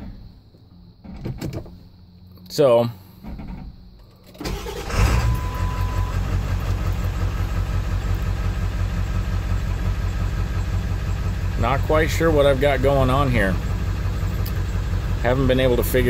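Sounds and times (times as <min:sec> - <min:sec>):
diesel engine cranking and starting: 0:03.0 - 0:16.0
diesel engine idling with knock: 0:03.2 - 0:04.0, 0:05.6 - 0:16.0.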